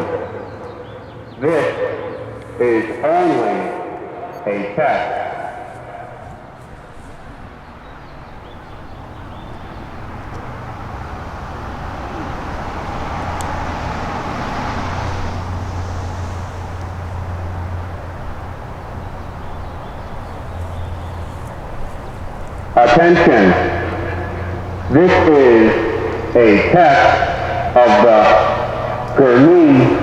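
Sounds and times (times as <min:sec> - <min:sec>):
vehicle passing: 0:05.0 - 0:30.0
low engine hum: 0:06.1 - 0:30.0.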